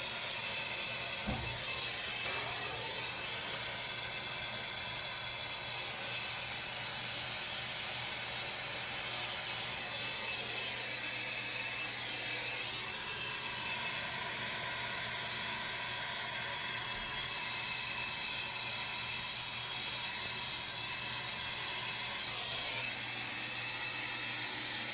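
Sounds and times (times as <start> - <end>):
torch flame hissing: 0.0 - 17.7.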